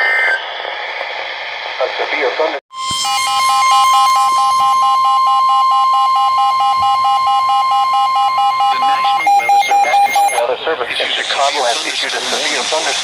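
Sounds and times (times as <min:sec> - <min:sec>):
steady alert tone: 0:02.7 - 0:10.5
rapid electronic beeping: 0:02.7 - 0:13.0.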